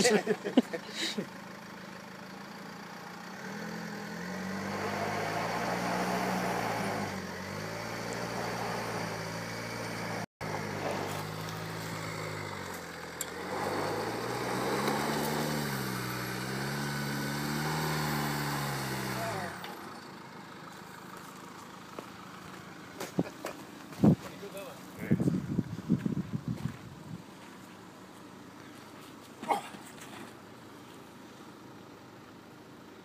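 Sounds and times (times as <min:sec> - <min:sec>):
tyre and ground noise: 0:00.0 - 0:32.9
car engine pulling under load: 0:00.1 - 0:24.6.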